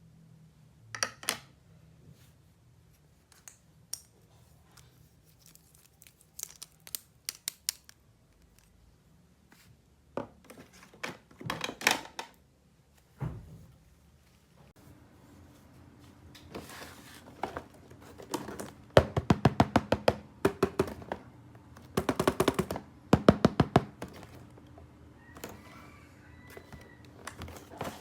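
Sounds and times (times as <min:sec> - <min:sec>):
packaging crinkling: 0:05.2 - 0:08.7
plastic toy pieces clicking: 0:06.4 - 0:08.7.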